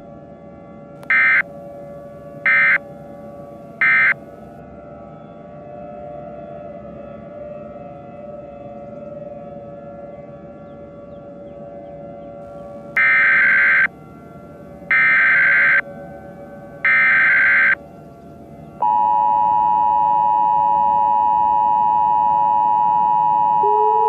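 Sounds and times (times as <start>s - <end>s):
steady siren-like drone: 0.0s - 24.0s
harsh emergency alert data bursts: 1.0s - 1.5s, 2.4s - 2.8s, 3.8s - 4.4s, 12.8s - 14.0s, 14.8s - 16.0s, 16.7s - 17.9s, 18.8s - 24.0s.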